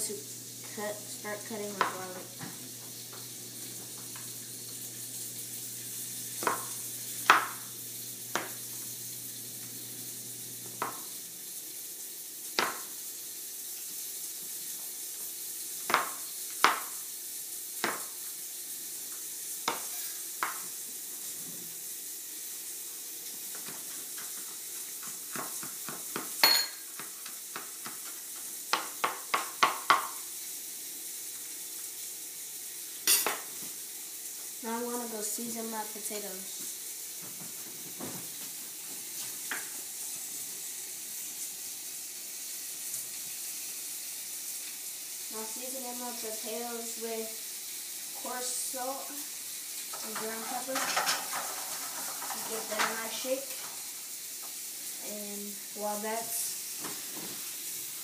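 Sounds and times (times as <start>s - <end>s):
steak sizzling in a pan: 0.0s - 58.0s
knife chopping on cutting board: 6.4s - 7.6s, 8.3s - 8.6s, 12.6s - 12.9s, 15.9s - 16.9s, 17.8s - 18.1s, 19.7s - 20.6s, 28.7s - 30.2s.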